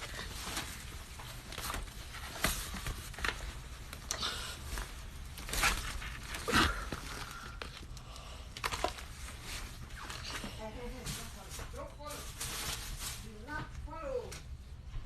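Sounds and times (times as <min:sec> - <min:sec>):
rustling and handling noises: 0:00.0 - 0:15.0.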